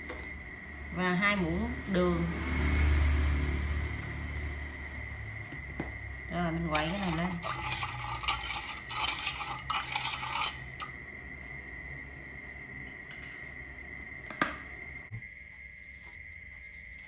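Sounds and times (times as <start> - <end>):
spoon scraping in a bowl: 6.6 - 11.0.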